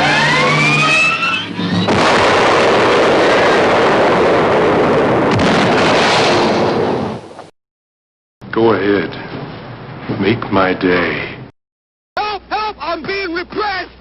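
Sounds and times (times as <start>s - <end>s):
rising whistling tones: 0.0s - 1.9s
explosion sound effect: 0.0s - 7.4s.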